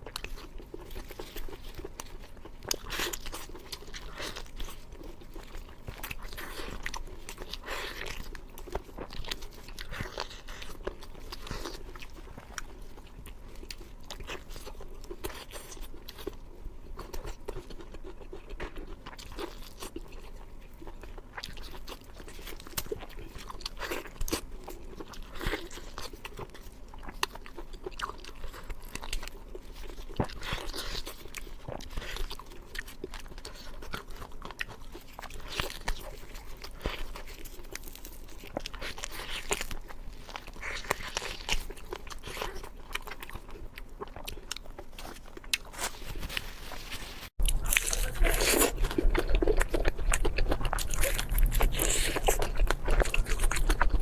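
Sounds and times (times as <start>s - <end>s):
chewing with crunches: 0.0s - 54.0s.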